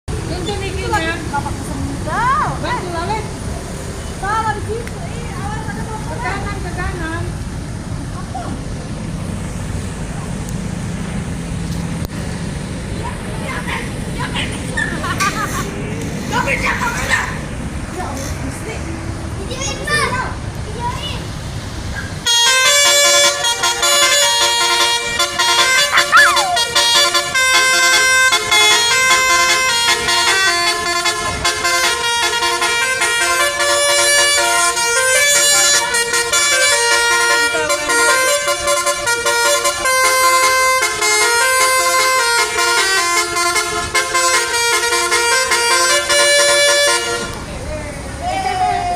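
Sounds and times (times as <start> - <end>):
multi-tone bus horn tune: 22.2 - 47.5.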